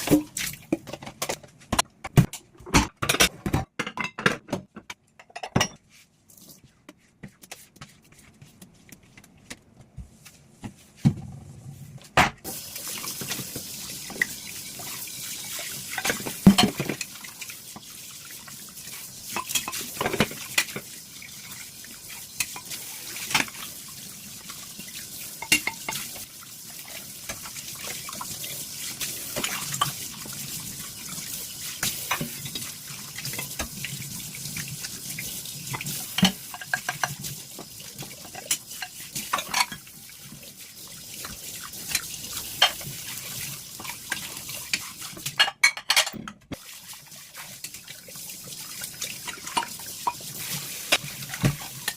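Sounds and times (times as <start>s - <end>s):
dishes clinking: 5.2s - 5.8s, 45.4s - 46.4s
tap water running: 12.4s - 51.9s.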